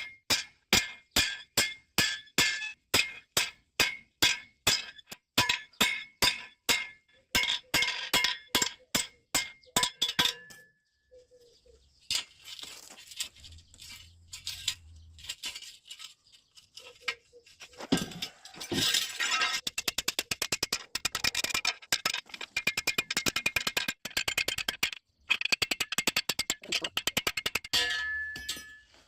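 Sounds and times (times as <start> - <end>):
hammer striking steel: 0.0 - 10.7, 27.6 - 29.0
metal clinking and scraping: 12.0 - 29.0.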